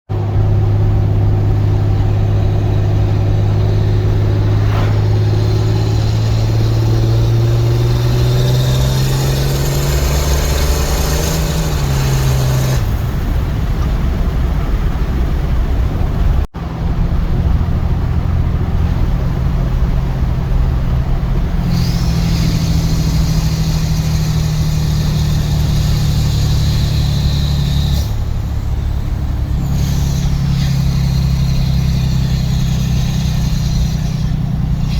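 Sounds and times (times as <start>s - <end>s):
diesel engine running loudly: 0.1s - 13.7s, 15.9s - 34.9s
high whine: 0.1s - 13.8s.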